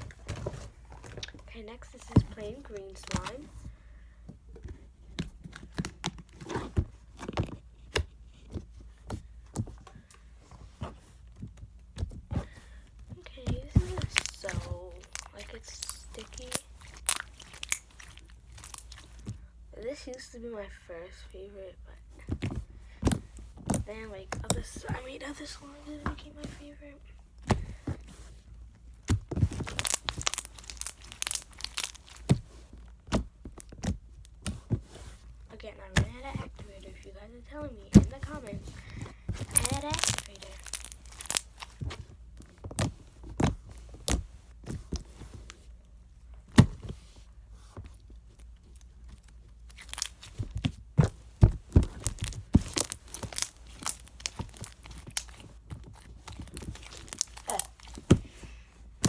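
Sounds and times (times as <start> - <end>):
slime squelches: 0.0 - 3.7, 12.0 - 45.6, 46.5 - 59.0
slime sticky clicks and pops: 14.0 - 19.0, 29.6 - 32.3, 39.5 - 41.6, 52.0 - 55.4
slime squishing wet clicks: 14.0 - 19.1.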